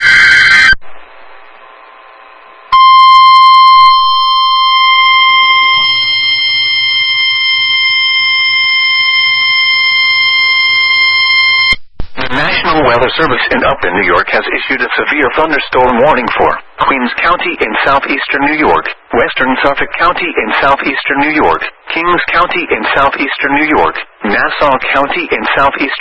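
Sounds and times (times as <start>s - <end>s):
steady high-pitched alarm tone: 1.6s - 11.8s
faint radio hiss: 12.0s - 26.0s.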